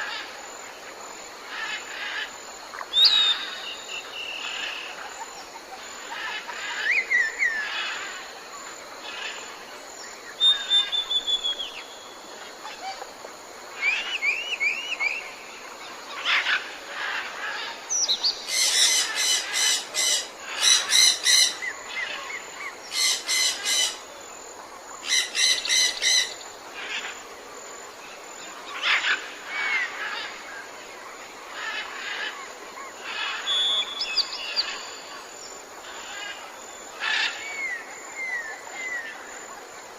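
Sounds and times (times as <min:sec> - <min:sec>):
birds chirping and whistling: 0:10.4 - 0:11.8.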